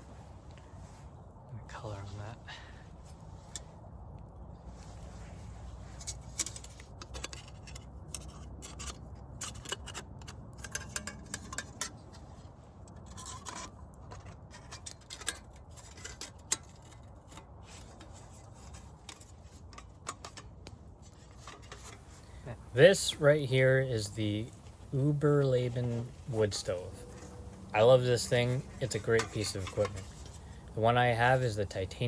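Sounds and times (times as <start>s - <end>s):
low steady rumble: 20.7s - 32.0s
scraping and rubbing by hand: 21.0s - 32.0s.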